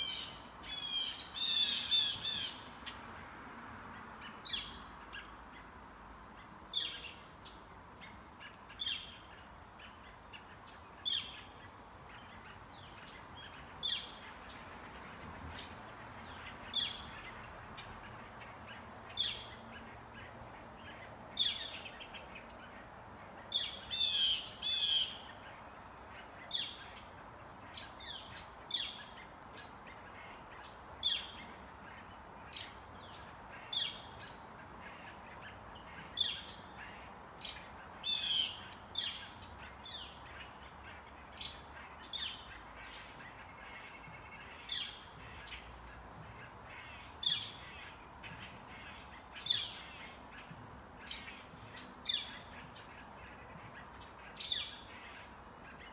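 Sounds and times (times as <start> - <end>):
birds calling: 0.0 - 3.0, 3.9 - 55.9.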